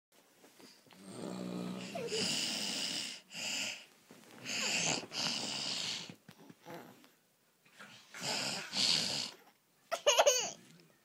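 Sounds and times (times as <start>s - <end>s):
wheezy hissing breaths: 0.6s - 6.2s
person snoring: 0.9s - 7.0s, 8.2s - 9.4s.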